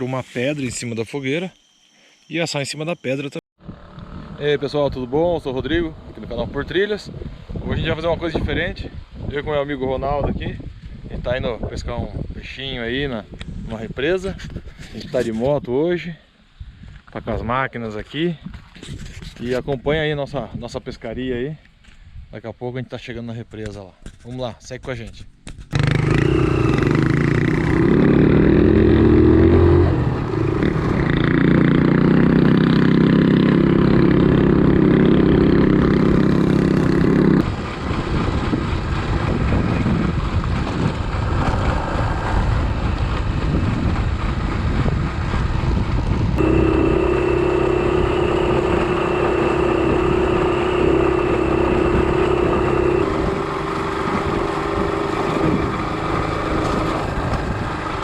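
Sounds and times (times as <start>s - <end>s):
motorcycle engines running: 3.6s - 7.0s, 25.7s - 58.0s
wind noise on microphone: 3.6s - 15.7s, 16.5s - 17.7s, 18.3s - 22.4s, 25.0s - 58.0s.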